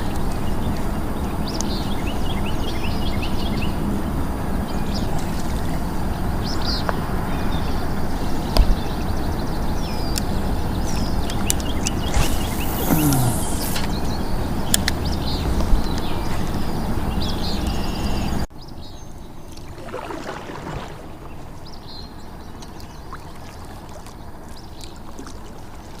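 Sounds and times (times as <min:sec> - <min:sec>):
small birds chirping: 0:04.8 - 0:19.1.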